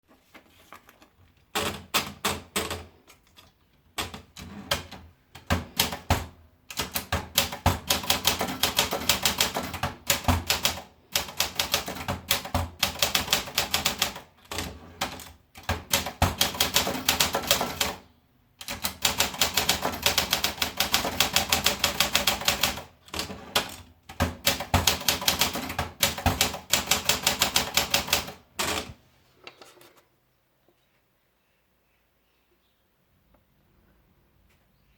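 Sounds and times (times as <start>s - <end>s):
manual typewriter typing: 1.4s - 18.0s, 18.6s - 29.0s.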